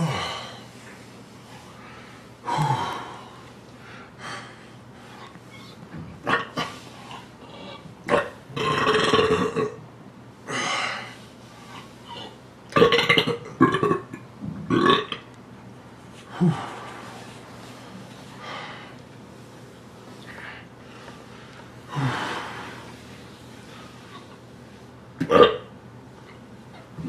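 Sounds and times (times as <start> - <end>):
man burping loudly: 8.1 - 9.8, 12.8 - 15.2, 25.2 - 25.7.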